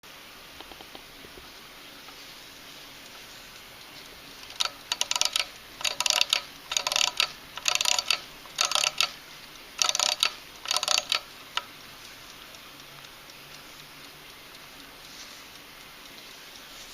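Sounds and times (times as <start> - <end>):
wind-up clock ratchet clicking: 4.4 - 16.9.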